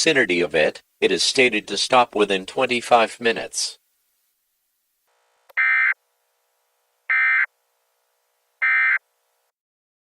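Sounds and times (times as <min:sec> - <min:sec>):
raspy electronic data tones: 0:07.1 - 0:07.5, 0:08.6 - 0:09.0.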